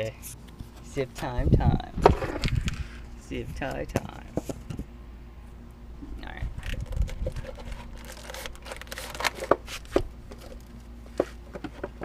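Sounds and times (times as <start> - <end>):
zip ties rustling and clicking: 6.6 - 10.7.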